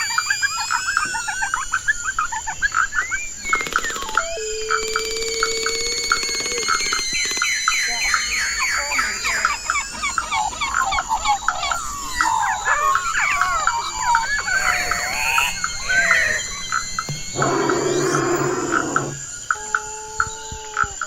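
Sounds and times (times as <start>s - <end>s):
high-pitched whine: 4.4s - 19.8s
birds chirping in chorus: 6.8s - 21.0s
rough hissing with low hum: 14.4s - 19.4s.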